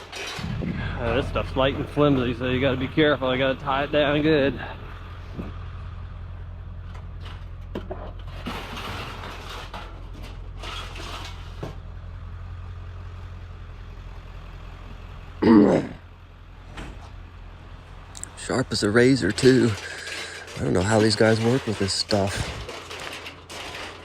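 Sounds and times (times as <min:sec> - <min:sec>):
sheet metal rattling and scraping: 0:00.0 - 0:03.8, 0:06.8 - 0:11.9, 0:18.2 - 0:24.0
diesel truck engine idling: 0:00.4 - 0:23.9.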